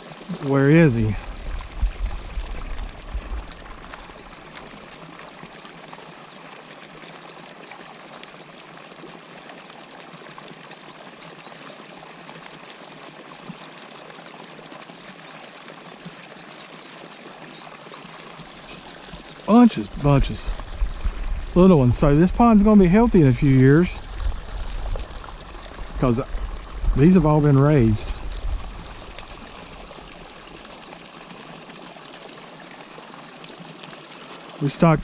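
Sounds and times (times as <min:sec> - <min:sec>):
water pouring into a pond: 0:00.0 - 0:35.0
low bumps: 0:00.9 - 0:04.1, 0:19.8 - 0:29.4.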